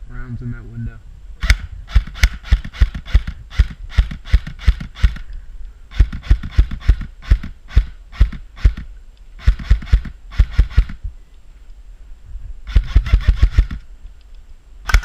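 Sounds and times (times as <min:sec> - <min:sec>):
airsoft rifle shots: 0:01.4 - 0:05.3, 0:05.9 - 0:11.0, 0:12.7 - 0:13.8.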